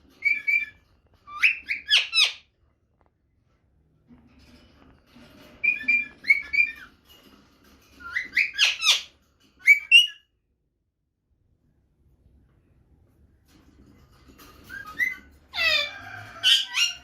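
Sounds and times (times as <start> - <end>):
parakeet whistling calls: 1.3 - 2.4, 8.0 - 10.2.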